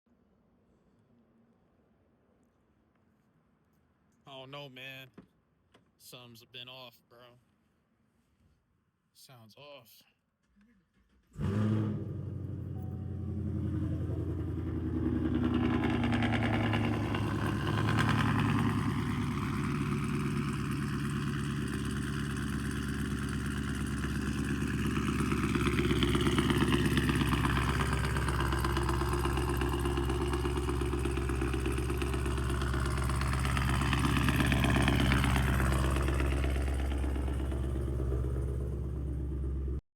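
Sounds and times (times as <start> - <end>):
car engine starting and idling: 10.9 - 39.8.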